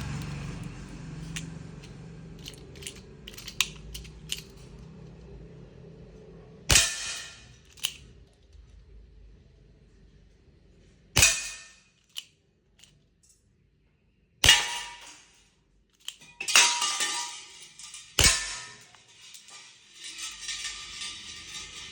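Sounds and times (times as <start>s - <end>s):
gun action clicks: 7.7s - 8.0s.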